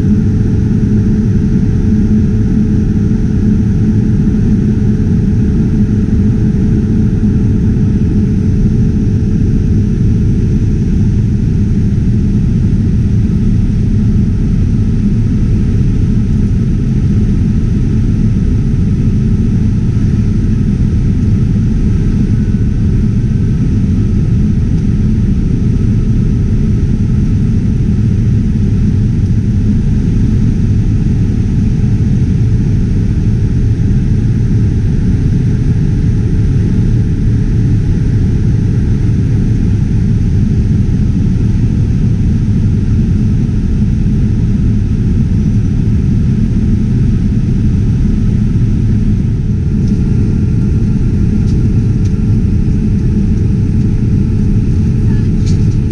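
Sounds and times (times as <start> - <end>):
aircraft cabin rumble: 0.0 - 55.9.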